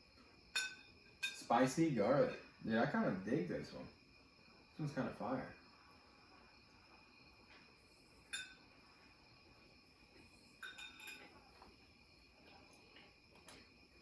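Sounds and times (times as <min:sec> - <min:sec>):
light clinks: 0:00.5 - 0:01.5, 0:08.2 - 0:08.8, 0:10.2 - 0:11.7.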